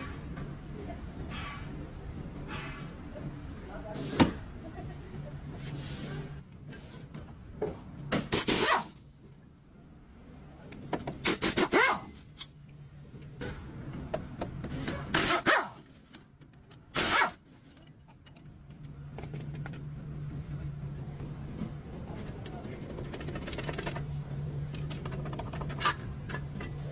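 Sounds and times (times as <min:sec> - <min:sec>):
steady low hum: 0:08.9 - 0:26.9.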